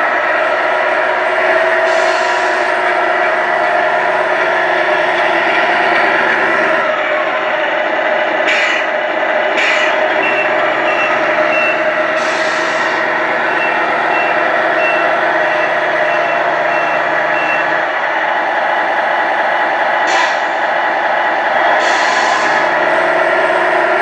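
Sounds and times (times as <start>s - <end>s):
electronic diesel engine drone: 0.0s - 24.0s
air-brake hisses: 8.5s - 8.9s, 9.6s - 10.0s, 12.2s - 13.0s, 20.1s - 20.6s, 21.8s - 22.6s
reversing beeps: 10.2s - 12.0s, 12.8s - 17.8s.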